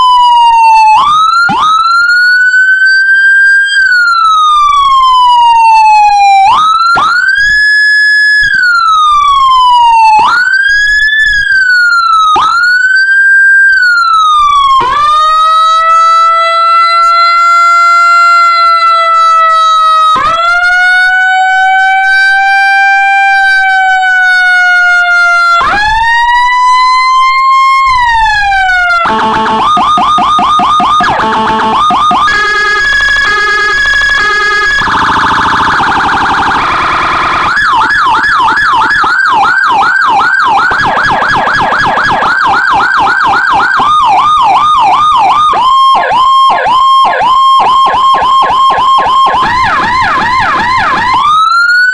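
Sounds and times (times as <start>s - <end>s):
electronic police siren: 0.0s - 51.9s.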